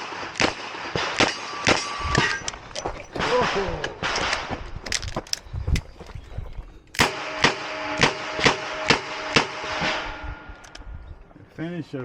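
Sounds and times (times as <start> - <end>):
revolver gunshots: 7.0 - 10.5.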